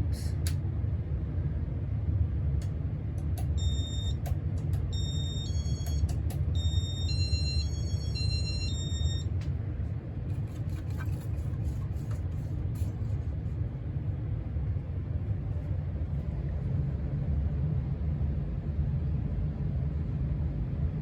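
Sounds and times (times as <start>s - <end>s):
hvac system rumble: 0.0s - 21.0s
electronic beeps: 3.5s - 4.2s, 4.9s - 9.3s.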